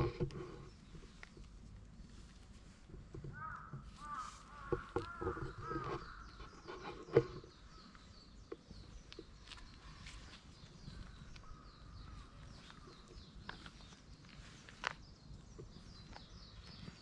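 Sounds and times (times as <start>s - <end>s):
short arching animal calls: 3.3s - 7.3s.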